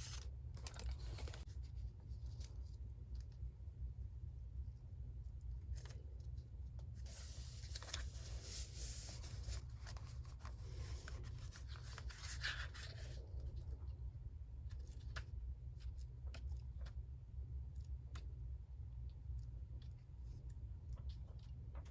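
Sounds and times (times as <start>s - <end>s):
paper rustling: 0.0s - 3.3s, 5.7s - 13.8s.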